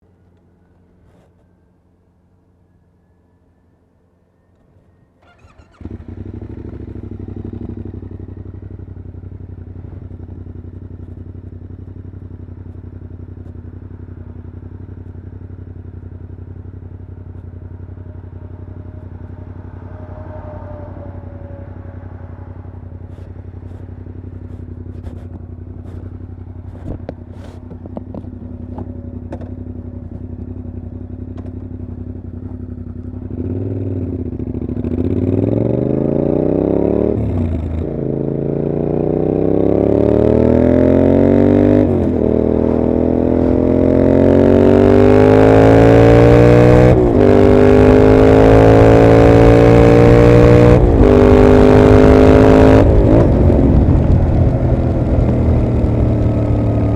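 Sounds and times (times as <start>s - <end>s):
motorcycle engine idling: 5.2s - 35.3s
motorcycle accelerating through gears: 5.2s - 56.9s.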